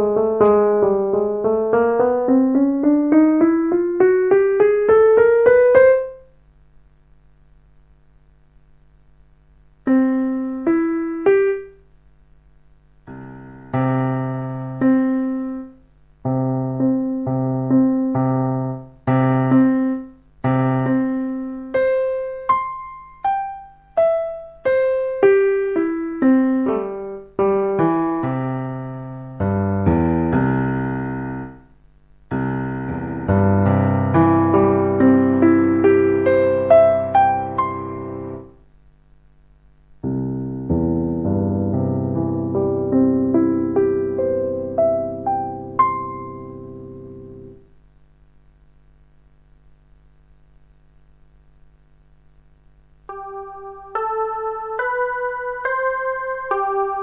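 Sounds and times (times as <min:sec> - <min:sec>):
digital piano playing: 0:00.0 - 0:06.3, 0:09.9 - 0:11.8, 0:13.1 - 0:31.6, 0:32.3 - 0:38.6, 0:40.0 - 0:47.6, 0:53.1 - 0:57.0
faint steady hum: 0:00.0 - 0:57.0.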